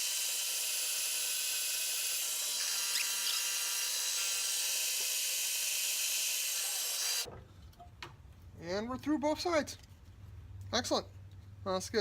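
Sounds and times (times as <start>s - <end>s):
drill press boring: 0.0s - 7.3s.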